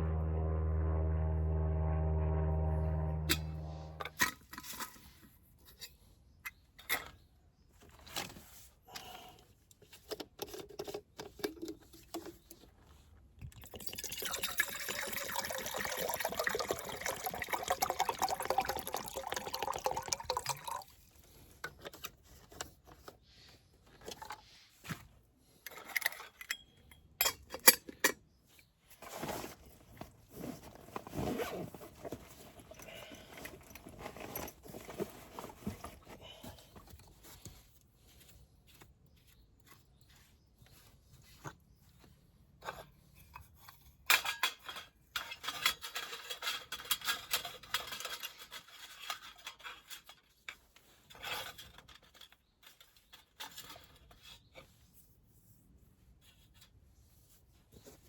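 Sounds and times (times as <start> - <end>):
liquid pouring: 13.6 - 20.9.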